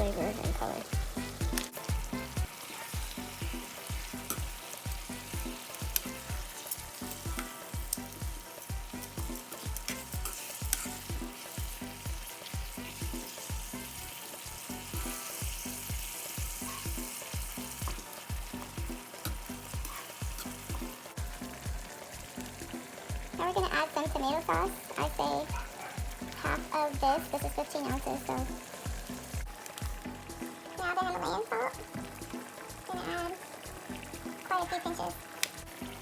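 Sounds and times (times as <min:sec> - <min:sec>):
low thumping beat: 0:00.0 - 0:14.1, 0:14.9 - 0:34.4
chicken sizzling in a pan: 0:00.0 - 0:36.0
utensil clicking against pan: 0:01.4 - 0:01.8, 0:02.9 - 0:13.9, 0:14.9 - 0:21.0.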